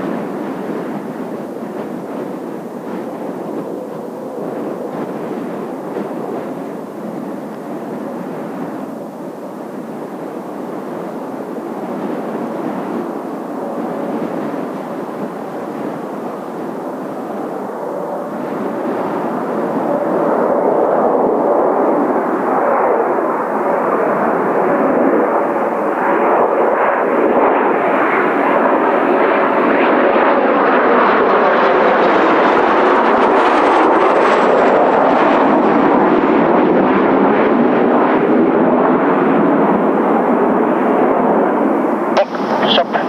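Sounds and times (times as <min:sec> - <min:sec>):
jet engine roar: 0:00.0 - 0:43.0.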